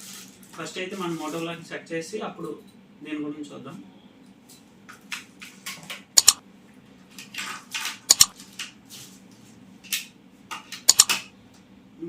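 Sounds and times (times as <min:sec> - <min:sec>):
sharp plastic clicks: 0:06.2 - 0:06.4, 0:08.1 - 0:08.3, 0:10.9 - 0:11.2.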